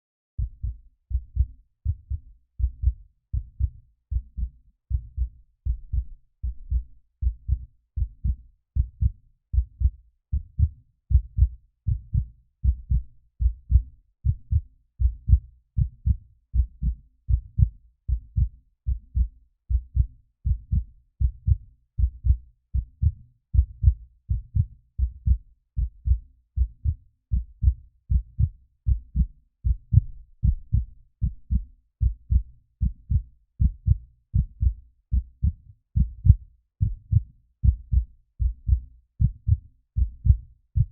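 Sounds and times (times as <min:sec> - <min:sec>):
heartbeat: 0:00.4 - 0:40.9.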